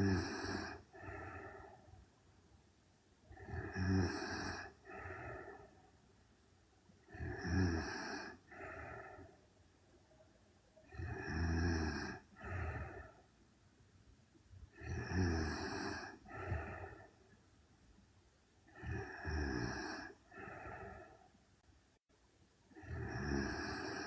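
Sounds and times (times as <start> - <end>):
woman snoring: 0.0 - 1.8, 3.3 - 5.7, 7.0 - 9.3, 10.8 - 13.2, 14.7 - 17.1, 18.7 - 21.2, 22.7 - 24.0.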